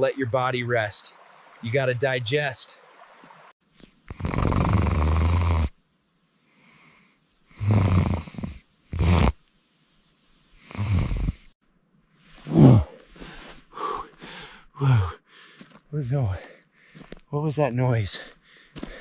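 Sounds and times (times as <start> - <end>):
person snoring: 4.1 - 5.7, 7.5 - 9.4, 10.6 - 11.4.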